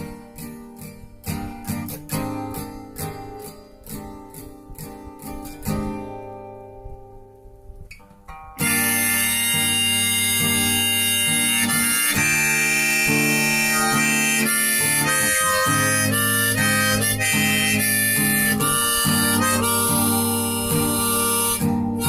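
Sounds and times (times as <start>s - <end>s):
strummed acoustic guitar: 0.0s - 22.0s
harmonica melody: 8.6s - 22.0s.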